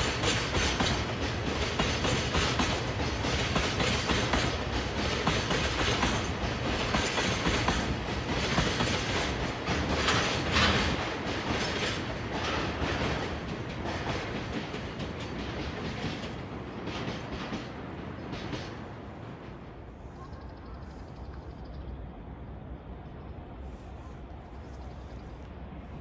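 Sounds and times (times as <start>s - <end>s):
train wheels clacking over rail joints: 0.0s - 19.0s
train rumble: 0.0s - 26.0s.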